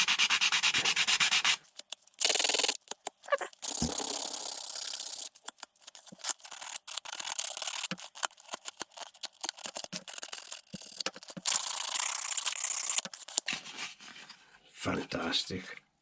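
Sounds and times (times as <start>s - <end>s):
plastic film peeling and crinkling: 1.7s - 13.7s.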